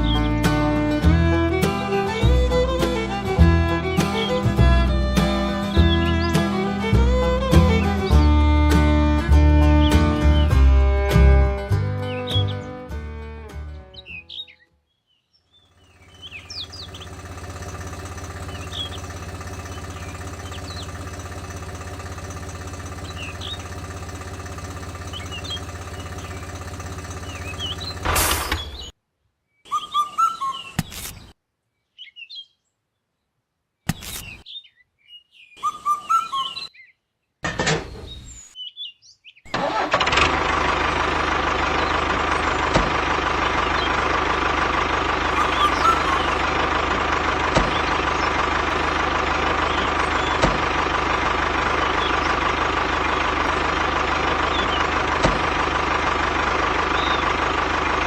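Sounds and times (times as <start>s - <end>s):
birds chirping: 0.0s - 10.7s, 11.8s - 39.5s, 40.4s - 58.0s
small tractor engine running: 0.0s - 13.8s, 15.6s - 28.9s, 39.5s - 58.0s.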